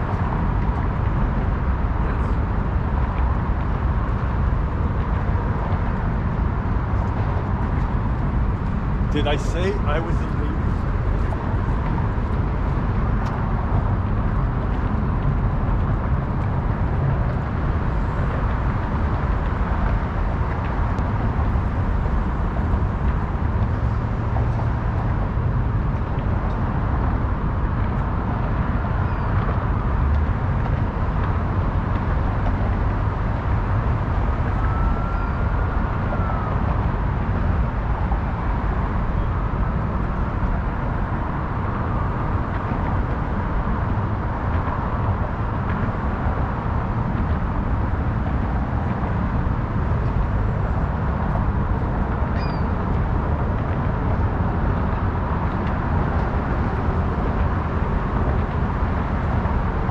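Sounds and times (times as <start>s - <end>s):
road traffic rumble: 0.0s - 59.9s
faint whistle-like tone: 34.6s - 35.6s.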